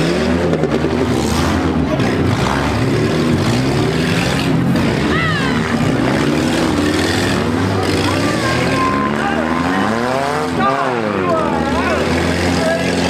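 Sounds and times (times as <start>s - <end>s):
small car engines revving: 0.0s - 13.0s.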